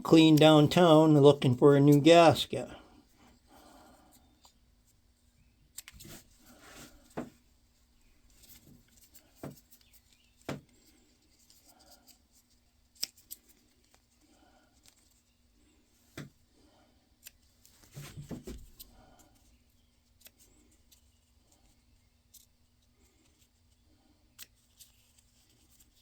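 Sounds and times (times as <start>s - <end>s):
faint handling rustle: 3.0s - 16.5s, 17.2s - 26.0s.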